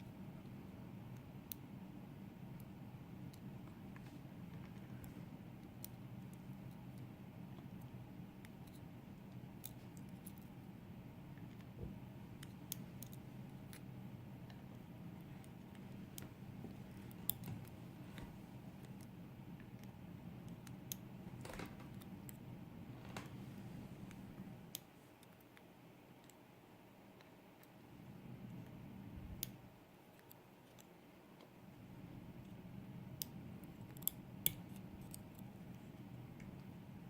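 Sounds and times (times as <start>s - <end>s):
low steady hum: 0.0s - 37.0s
small metallic clicks of tweezers: 7.8s - 10.5s, 17.0s - 17.6s, 26.2s - 26.4s, 33.2s - 35.5s.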